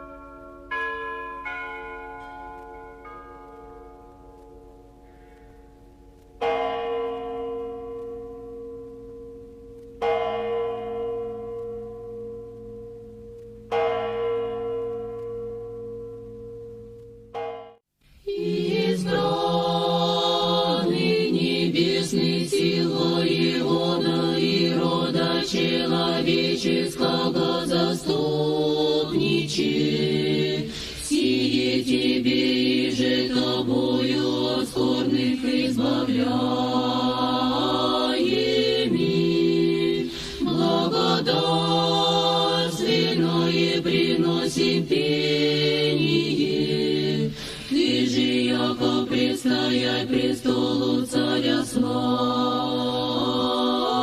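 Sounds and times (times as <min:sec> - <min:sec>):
church bell tolling: 0:00.0 - 0:17.8
choir singing slow chant: 0:18.2 - 0:54.0.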